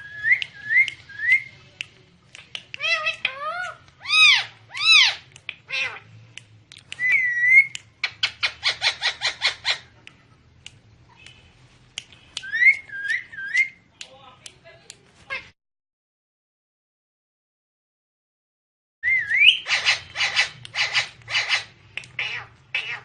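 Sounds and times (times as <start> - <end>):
parakeet whistling and calling: 0.0 - 1.5, 7.0 - 9.9, 12.4 - 13.8, 19.0 - 23.0.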